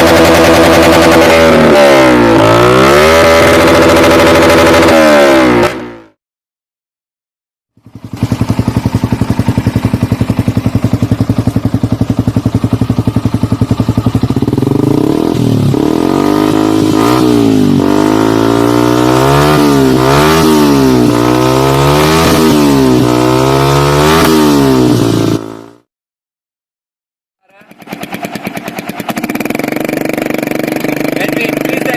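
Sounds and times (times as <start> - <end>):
motorcycle engine idling and revving: 0.0 - 6.2, 7.7 - 25.9, 27.4 - 31.9.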